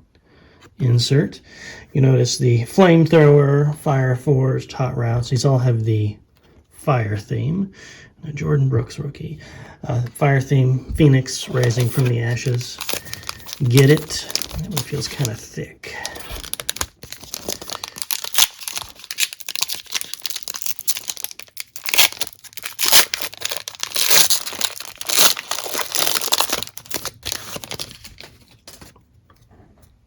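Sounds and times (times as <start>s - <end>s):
plastic wrapper crinkling: 11.3s - 29.0s
plastic wrapper ripping: 11.4s - 15.4s, 16.0s - 28.9s.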